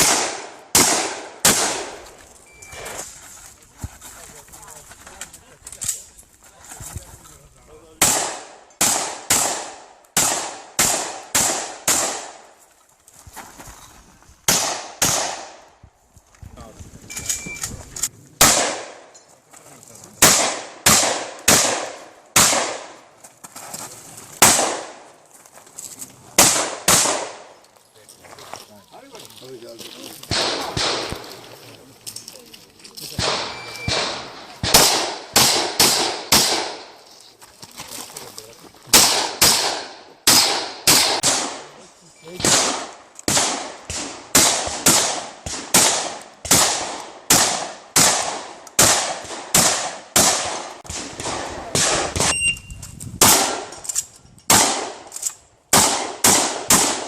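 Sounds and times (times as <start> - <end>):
shotgun shots: 0.0 - 2.0, 8.0 - 12.4, 14.5 - 15.6, 18.4 - 19.1, 20.2 - 23.0, 24.4 - 25.0, 26.4 - 27.5, 30.3 - 31.4, 33.2 - 37.0, 38.9 - 52.4, 53.2 - 53.8, 54.5 - 55.1, 55.7 - 57.0.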